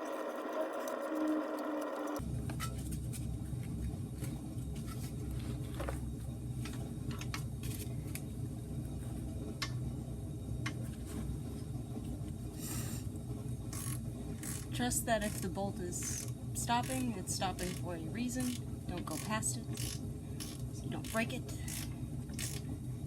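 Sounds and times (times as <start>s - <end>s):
steady low hum: 0.0s - 23.0s
hand tools clicking on metal: 13.8s - 22.6s.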